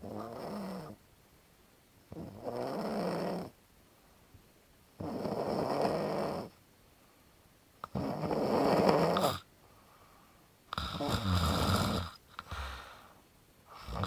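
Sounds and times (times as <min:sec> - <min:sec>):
person snoring: 0:08.0 - 0:09.4, 0:10.8 - 0:13.1, 0:13.7 - 0:14.0.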